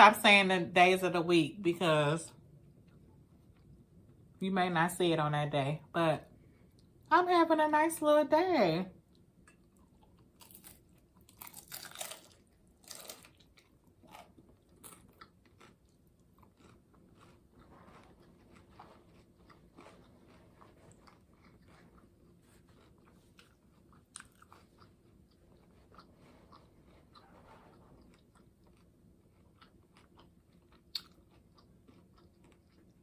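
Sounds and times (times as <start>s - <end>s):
chewing clicks: 9.1s - 18.7s, 28.0s - 33.0s
person crunching taco: 9.4s - 33.0s.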